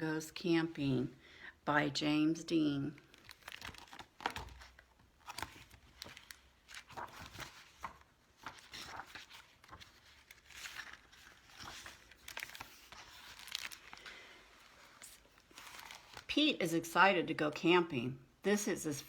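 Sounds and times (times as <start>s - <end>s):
book pages turning: 2.9s - 16.3s.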